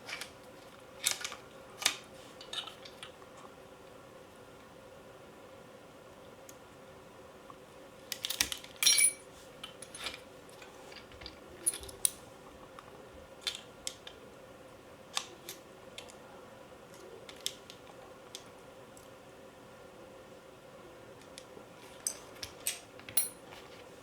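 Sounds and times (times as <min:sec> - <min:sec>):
metallic clicks and clinks: 0:22.0 - 0:23.4.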